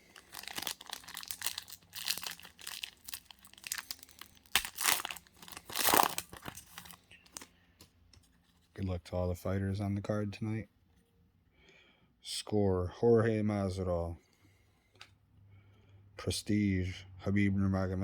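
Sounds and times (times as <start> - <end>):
wrapper tearing and crinkling: 0.0 - 7.5.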